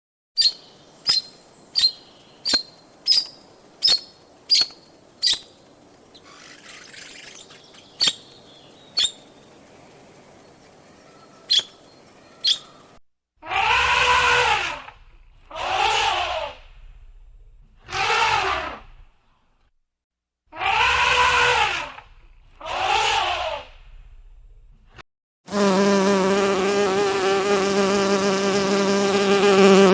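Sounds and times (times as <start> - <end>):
animal chirps: 0.4 - 9.6, 10.4 - 13.0.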